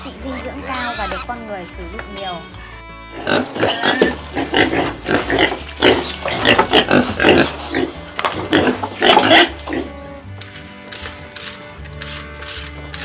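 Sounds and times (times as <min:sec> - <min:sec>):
pig grunting: 0:03.1 - 0:10.0.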